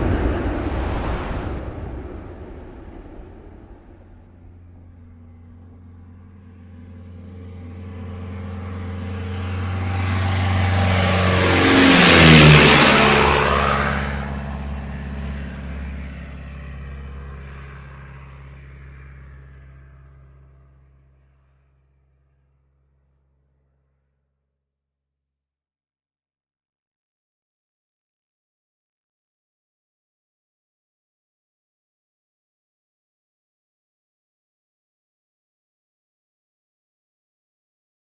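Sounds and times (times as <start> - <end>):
vehicle driving past: 0.0 - 20.2.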